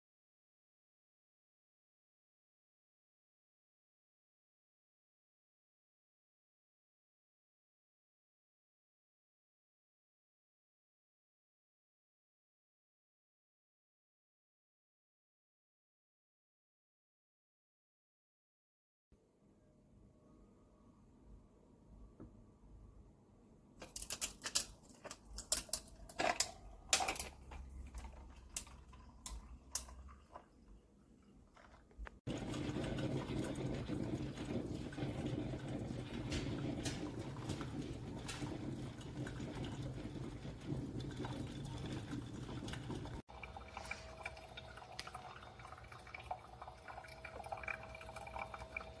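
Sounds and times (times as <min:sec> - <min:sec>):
plastic and metal being handled: 0:23.8 - 0:30.4
liquid running: 0:24.0 - 0:49.0.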